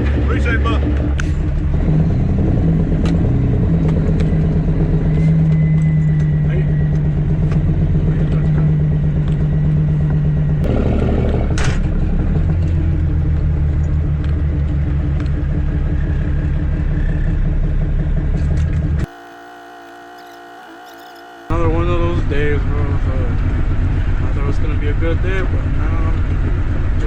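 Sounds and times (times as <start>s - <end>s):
diesel truck engine running: 0.0s - 27.0s.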